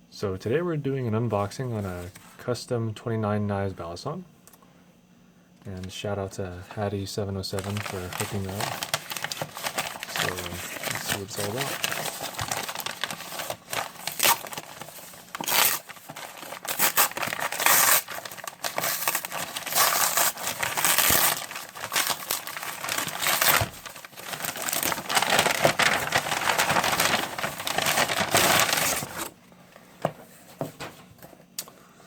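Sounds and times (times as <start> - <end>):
packaging crinkling and tearing: 7.5 - 29.3.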